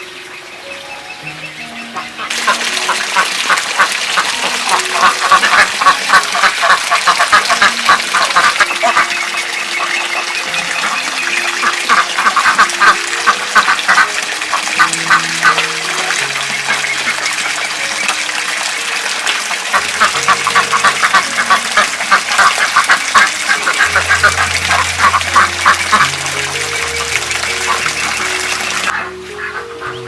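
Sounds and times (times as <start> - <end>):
ducks quacking: 0.0 - 30.0.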